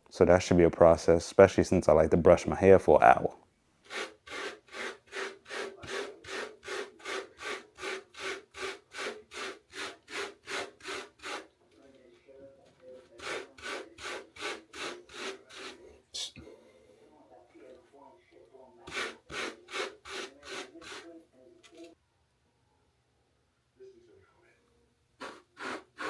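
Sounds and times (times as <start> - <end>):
hairbrush strokes through hair: 3.9 - 11.5, 13.1 - 15.8, 18.9 - 21.1, 25.2 - 26.0.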